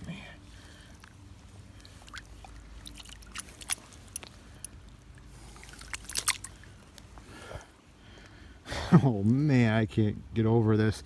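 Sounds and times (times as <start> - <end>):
low steady rumble: 0.0 - 11.0
water splashes and drips: 0.9 - 7.1.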